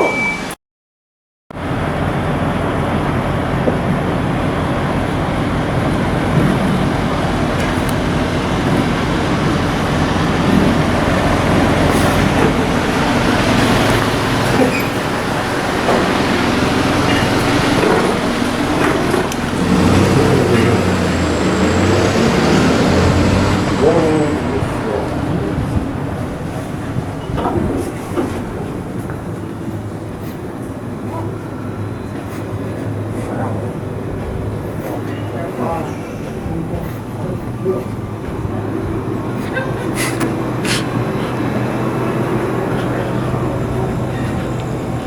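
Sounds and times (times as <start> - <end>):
vehicle engine and road noise: 1.5 - 45.0.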